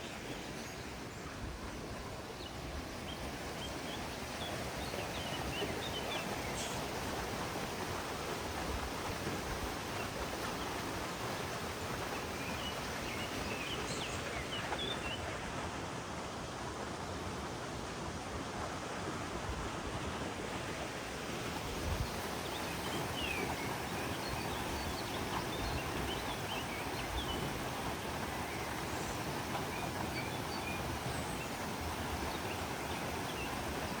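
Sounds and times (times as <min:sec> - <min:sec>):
stream flowing: 0:00.0 - 0:34.0
birds chirping: 0:21.9 - 0:34.0.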